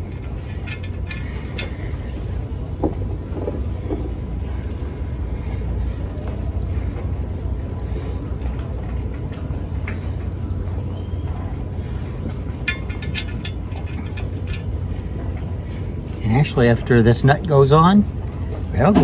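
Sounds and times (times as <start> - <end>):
wrench metallic clicks: 0.1 - 2.1, 12.6 - 14.8.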